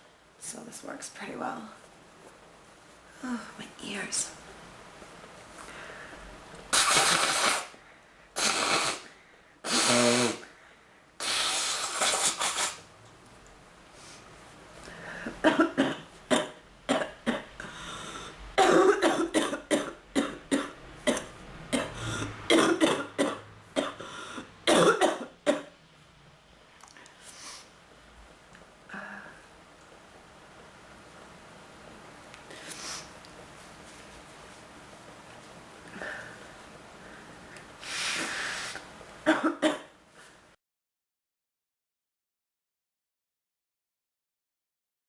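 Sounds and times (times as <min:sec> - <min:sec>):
woman coughing: 0:15.2 - 0:17.5, 0:18.6 - 0:25.7, 0:39.3 - 0:39.9.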